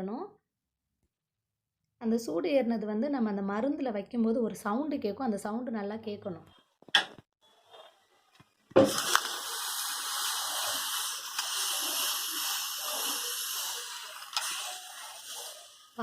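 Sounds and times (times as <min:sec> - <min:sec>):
hot knife sizzling in leaf juice: 0:08.8 - 0:16.0.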